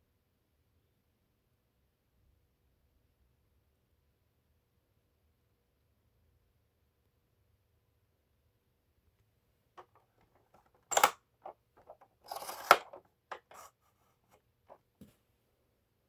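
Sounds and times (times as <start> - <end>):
handling clicks and scrapes: 9.8 - 14.8.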